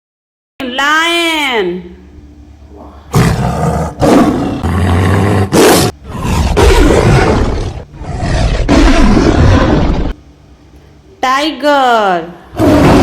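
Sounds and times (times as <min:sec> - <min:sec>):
lion roaring: 0:03.1 - 0:10.2, 0:12.5 - 0:13.0.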